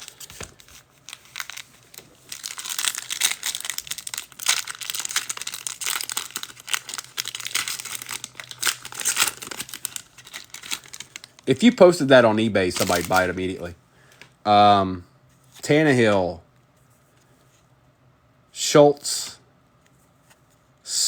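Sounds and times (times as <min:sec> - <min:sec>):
foil wrapper crinkling: 0:00.0 - 0:13.7.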